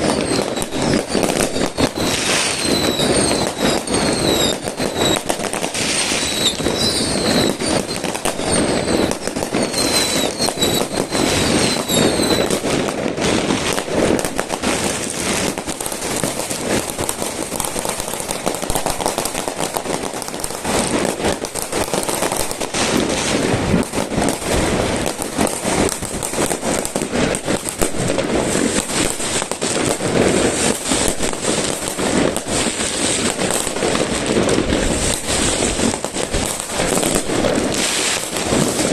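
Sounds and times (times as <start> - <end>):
short high whistles: 0.0 - 5.2, 5.9 - 12.5
fireworks bangs and crackles: 0.0 - 38.9.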